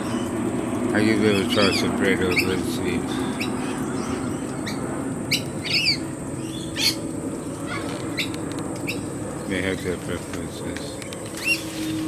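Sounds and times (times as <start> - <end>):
birds squawking and chirping: 0.0 - 12.0.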